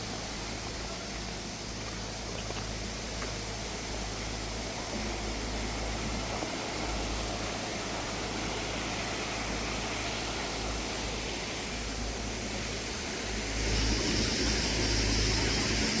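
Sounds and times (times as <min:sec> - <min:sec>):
stream rushing over rocks: 0:00.0 - 0:16.0.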